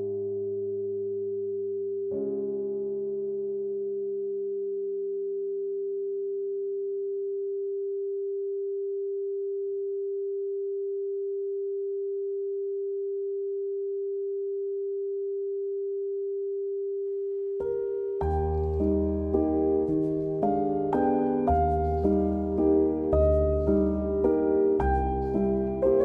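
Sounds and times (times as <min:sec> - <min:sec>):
faint low tones: 0:00.0 - 0:26.0
steady electronic sine tone: 0:03.6 - 0:19.8.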